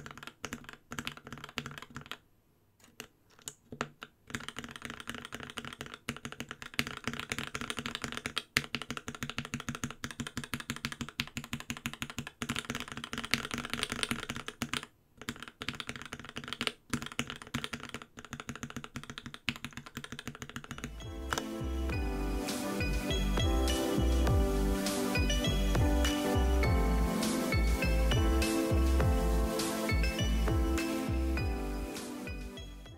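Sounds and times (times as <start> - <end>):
mechanical keyboard typing: 0.0 - 2.2, 2.8 - 21.5
music: 20.8 - 32.9.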